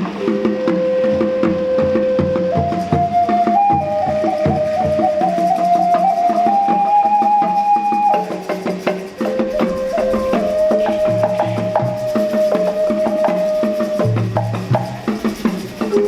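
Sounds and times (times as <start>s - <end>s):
drum beats: 0.0s - 16.0s
flute long notes: 0.0s - 16.0s
rattles: 8.0s - 16.0s.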